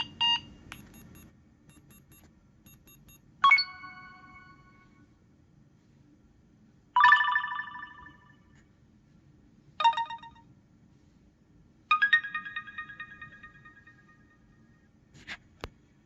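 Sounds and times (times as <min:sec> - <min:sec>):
phone ringtone bell-like tones: 0:02.7 - 0:05.0, 0:07.0 - 0:08.4, 0:09.8 - 0:10.4, 0:11.9 - 0:14.3.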